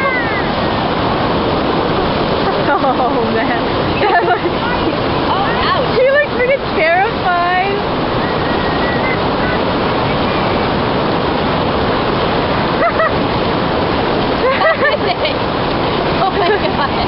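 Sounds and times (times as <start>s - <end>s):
river rapids rushing: 0.0s - 17.0s.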